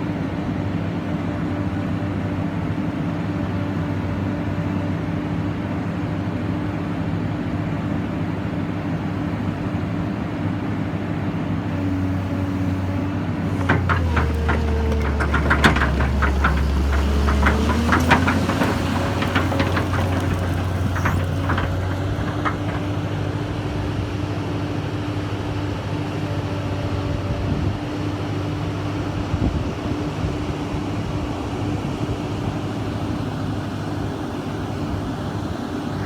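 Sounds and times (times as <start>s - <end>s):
excavator diesel engine: 0.1s - 36.0s
metallic clanks and clicks: 13.5s - 23.1s.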